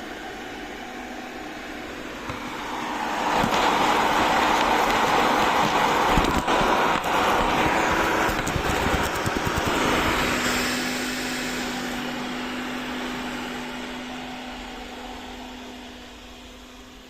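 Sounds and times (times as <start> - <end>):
robot vacuum cleaner running: 0.0 - 17.0.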